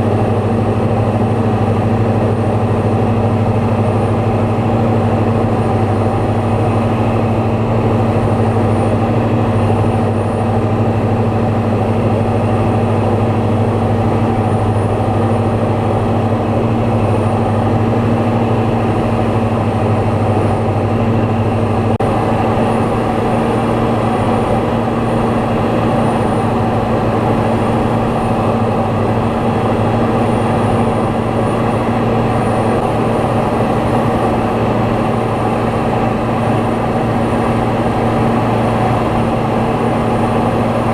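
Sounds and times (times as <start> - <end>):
propeller aircraft engine droning: 0.0 - 40.9.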